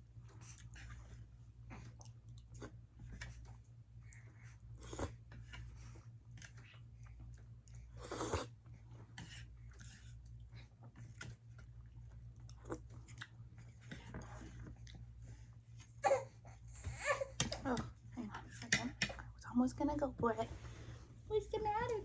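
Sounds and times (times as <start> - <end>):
person chewing food: 0.4 - 8.5, 9.2 - 15.2.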